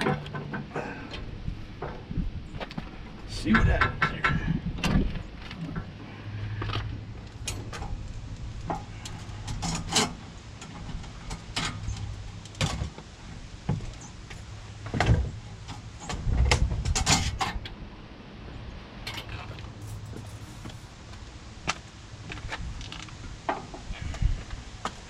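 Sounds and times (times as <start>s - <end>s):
hoses knocking and scraping on metal: 2.6s - 6.0s, 6.6s - 13.1s, 19.1s - 21.1s
steady low hum: 17.8s - 22.4s.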